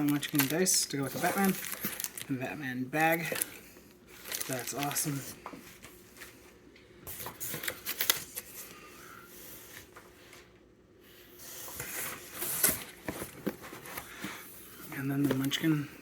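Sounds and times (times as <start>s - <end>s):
cards and packaging rustling: 0.0s - 6.5s, 7.1s - 8.9s, 11.5s - 15.9s.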